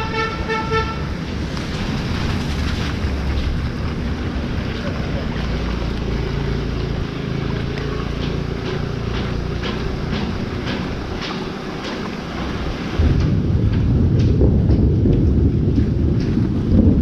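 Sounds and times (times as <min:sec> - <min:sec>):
vehicle going by: 0:00.0 - 0:17.0
wind buffeting microphone: 0:00.0 - 0:17.0.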